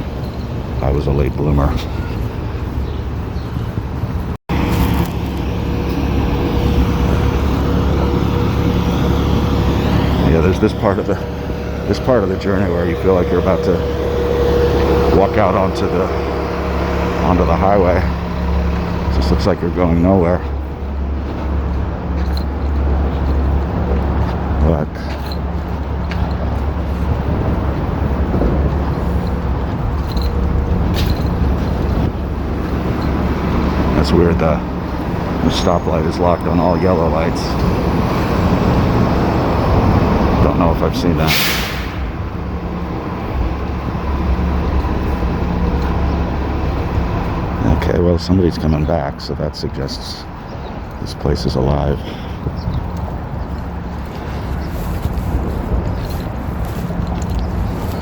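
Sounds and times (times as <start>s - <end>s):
road traffic passing: 0.0s - 58.0s
faint steady hum: 4.5s - 21.1s.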